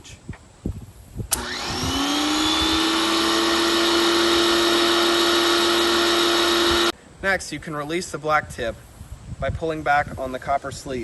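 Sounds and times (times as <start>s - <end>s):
pressure washer switch click: 1.3s - 1.7s
pressure washer motor whine: 1.3s - 6.9s.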